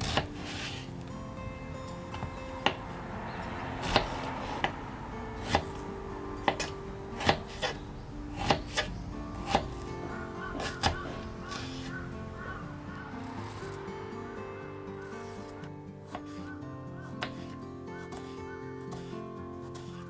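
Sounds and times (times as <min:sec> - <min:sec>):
knife chopping on cutting board: 0:00.0 - 0:00.8, 0:03.5 - 0:04.8, 0:05.4 - 0:12.0, 0:17.2 - 0:19.9
background music: 0:00.0 - 0:20.0.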